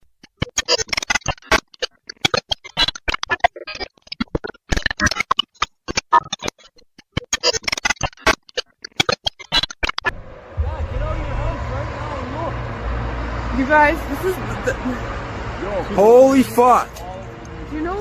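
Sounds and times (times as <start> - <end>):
choppy music bursts: 10.1 - 14.8.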